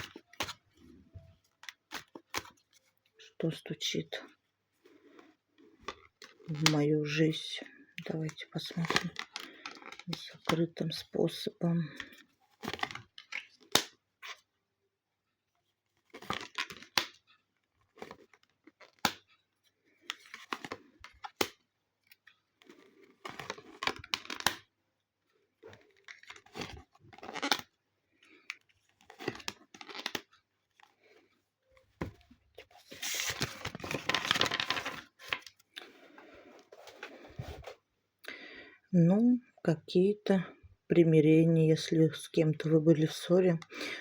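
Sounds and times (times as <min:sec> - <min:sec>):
cards being shuffled: 0:00.0 - 0:00.7, 0:01.4 - 0:03.0, 0:25.8 - 0:27.7, 0:28.3 - 0:31.2, 0:31.8 - 0:37.8.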